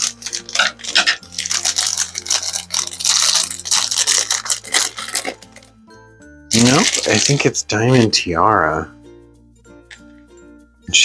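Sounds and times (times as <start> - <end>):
plastic packaging crinkling: 0.0 - 5.8, 6.5 - 7.6
soft background music: 0.0 - 11.0.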